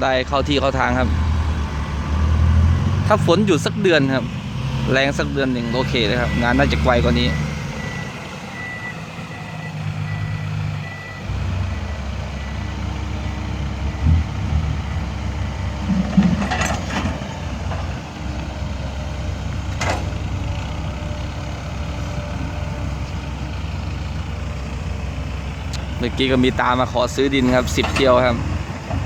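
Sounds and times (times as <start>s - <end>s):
diesel engine rumble: 0.0s - 29.0s
reversing beeper: 4.9s - 13.4s.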